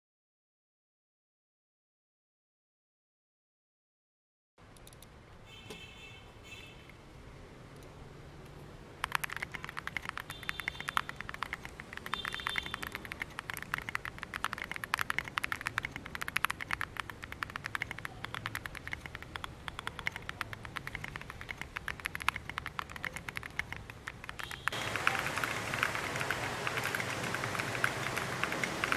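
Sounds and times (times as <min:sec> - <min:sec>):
mechanical keyboard typing: 0:09.0 - 0:28.9.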